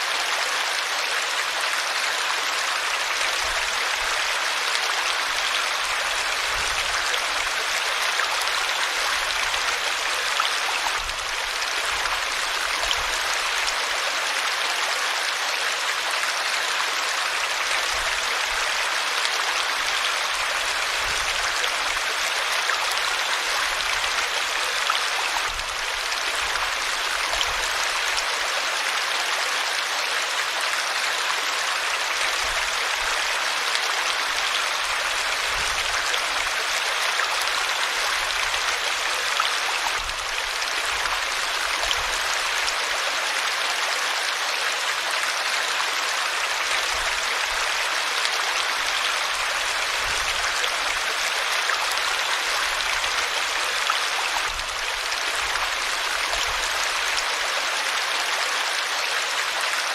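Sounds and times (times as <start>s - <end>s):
river water rushing: 0.0s - 59.9s.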